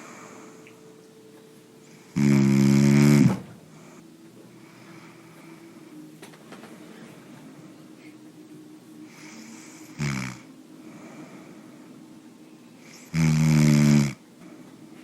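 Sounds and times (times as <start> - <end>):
faint breathing: 0.0 - 1.0, 3.2 - 6.2, 7.0 - 8.4, 10.7 - 13.2, 14.4 - 15.0
person snoring: 1.9 - 4.0, 9.1 - 11.3, 12.8 - 14.2.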